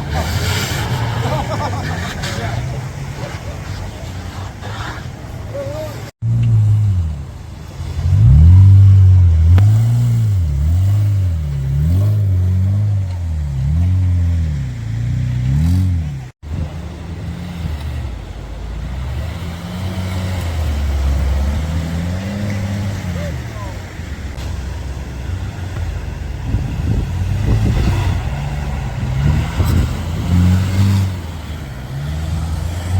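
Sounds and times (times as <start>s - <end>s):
engine revving: 0.0s - 32.9s.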